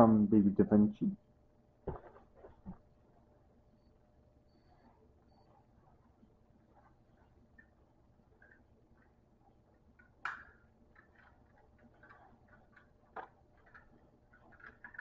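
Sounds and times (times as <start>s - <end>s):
toys clicking and tapping: 9.8s - 15.0s.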